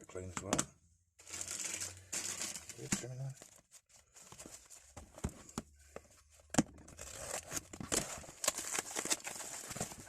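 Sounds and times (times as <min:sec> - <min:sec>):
packaging tearing and crinkling: 0:01.2 - 0:03.2, 0:06.9 - 0:10.0.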